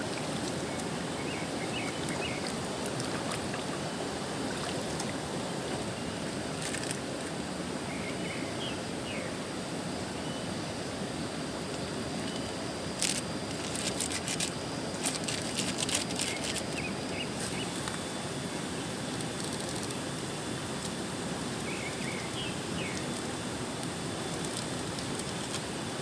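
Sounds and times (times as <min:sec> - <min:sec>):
steady rushing background noise: 0:00.0 - 0:26.0
sharp clicks and rustles: 0:13.0 - 0:16.8.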